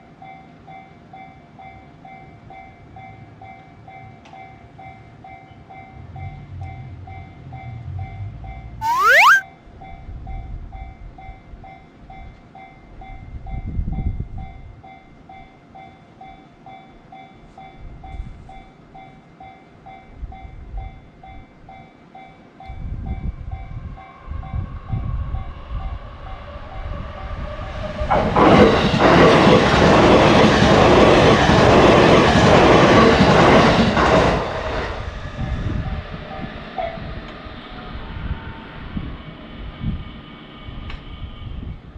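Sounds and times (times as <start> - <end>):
short rising whistle: 8.8 - 9.4.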